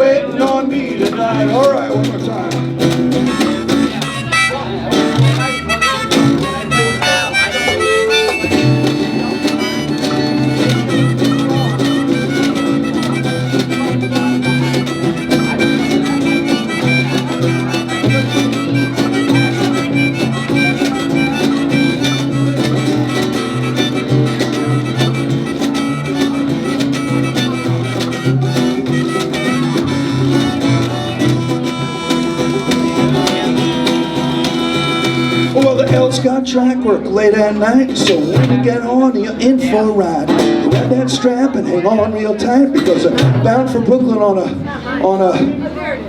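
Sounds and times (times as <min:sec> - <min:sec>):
live band playing upbeat song: 0:00.0 - 0:36.3, 0:37.8 - 0:38.8, 0:39.6 - 0:41.2, 0:42.8 - 0:43.8
rhythmic bass line: 0:00.4 - 0:36.3.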